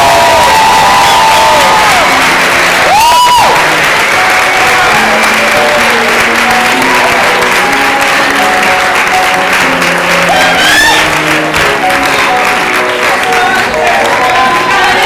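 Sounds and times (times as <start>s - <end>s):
audience whooping: 0.0s - 6.0s, 10.2s - 11.4s, 13.5s - 15.0s
audience applauding: 0.0s - 15.0s
piano held notes: 3.6s - 15.0s.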